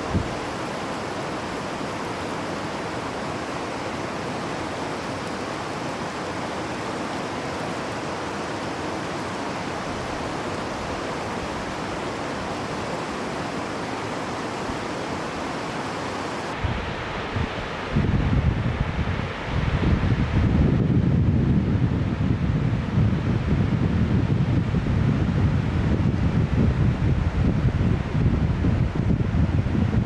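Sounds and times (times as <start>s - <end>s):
waterfall rushing: 0.0s - 20.0s.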